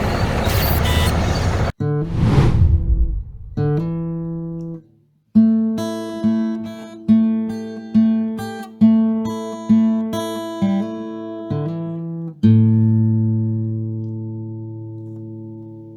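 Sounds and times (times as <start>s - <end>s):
guitar chords: 3.6s - 4.8s.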